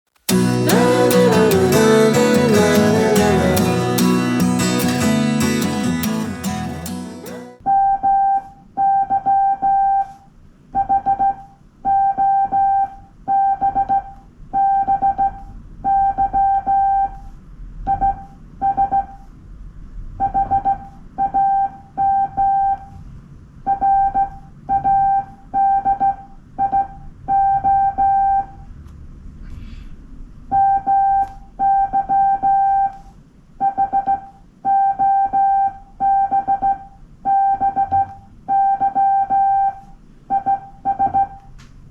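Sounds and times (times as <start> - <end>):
morse code beeps: 10.8 - 17.2, 17.9 - 19.2, 20.2 - 22.9, 23.7 - 28.6, 30.5 - 41.5.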